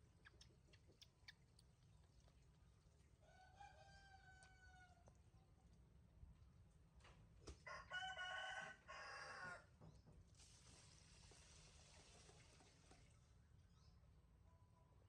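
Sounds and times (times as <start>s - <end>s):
rooster crowing: 3.2s - 5.1s, 7.6s - 9.7s.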